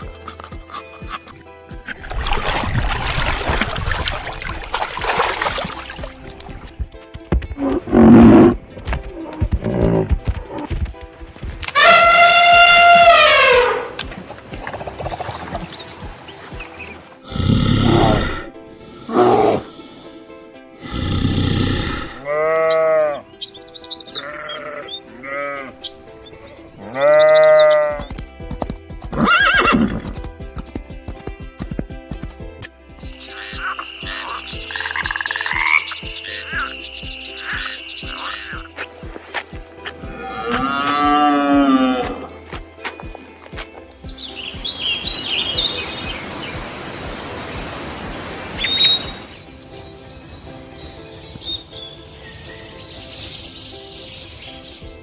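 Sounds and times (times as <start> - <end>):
background music: 0.0 - 55.0
birds chirping: 2.2 - 28.4, 32.8 - 55.0
farm animal calling: 11.7 - 15.9, 16.6 - 19.8, 20.8 - 28.2, 33.2 - 39.2, 39.8 - 42.4
outdoor noise hiss: 44.3 - 50.4.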